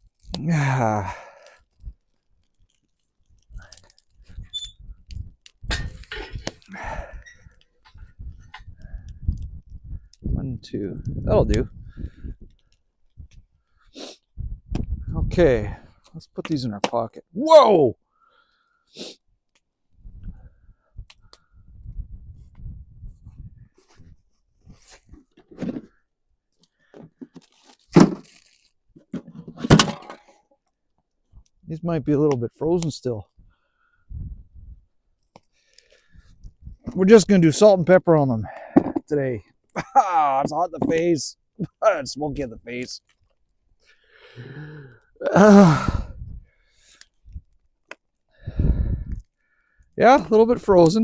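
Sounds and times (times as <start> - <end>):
man sighing: 0.4 - 1.5, 6.7 - 7.2, 44.2 - 46.3
food packaging tearing: 27.4 - 28.7.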